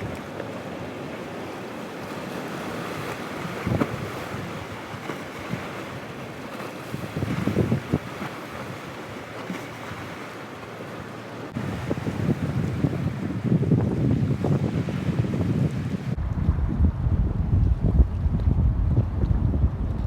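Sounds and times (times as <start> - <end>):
sea surf: 0.0 - 16.9
wind buffeting microphone: 2.1 - 6.1, 6.8 - 10.2, 11.5 - 20.0.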